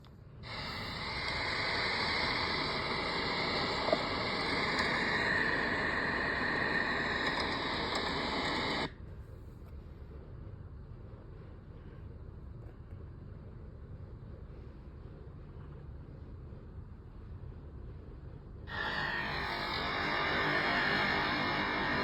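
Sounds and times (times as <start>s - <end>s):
dull background noise: 0.0s - 22.0s
heavy rain hissing: 0.4s - 8.9s, 18.7s - 22.0s.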